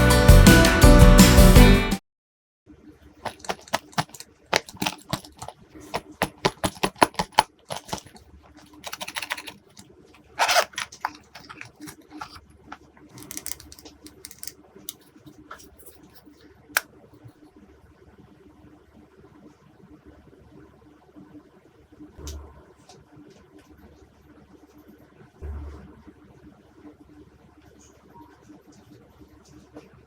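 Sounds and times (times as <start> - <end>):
slime squishing with sticky pops: 3.3 - 9.8.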